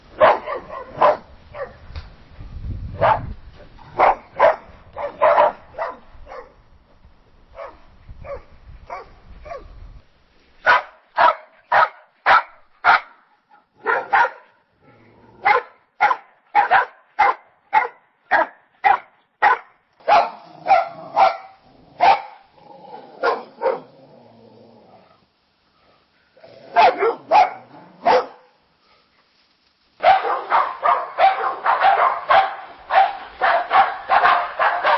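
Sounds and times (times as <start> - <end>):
dogs barking: 0.2 - 1.8, 3.0 - 3.3, 3.9 - 6.6, 10.7 - 13.2, 13.8 - 14.6, 15.4 - 22.5, 23.2 - 23.9, 26.7 - 28.5, 30.0 - 34.9.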